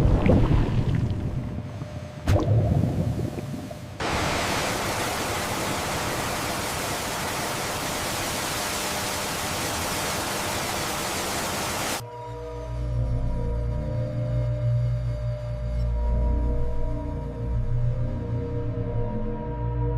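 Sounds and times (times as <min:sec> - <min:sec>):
steady rushing hiss: 0:03.8 - 0:12.0.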